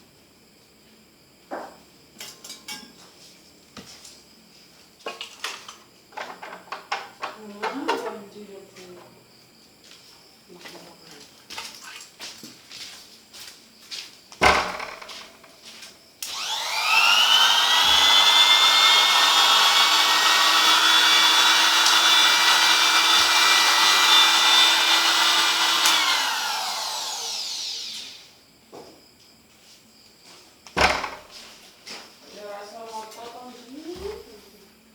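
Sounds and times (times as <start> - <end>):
electric router motor whining: 14.4 - 15.4, 16.2 - 28.3, 30.8 - 31.3.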